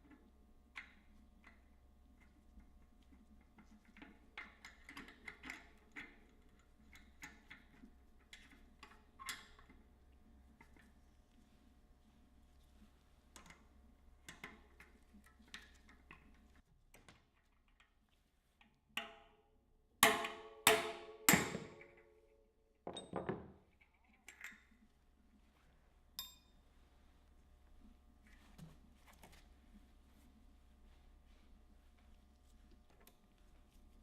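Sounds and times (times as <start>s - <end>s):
hammer striking metal punch: 20.0s - 21.9s.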